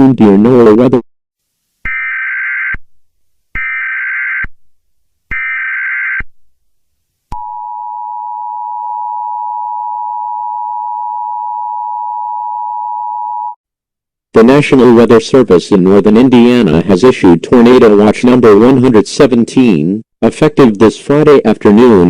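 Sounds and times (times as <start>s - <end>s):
steady attention tone: 7.3s - 13.6s.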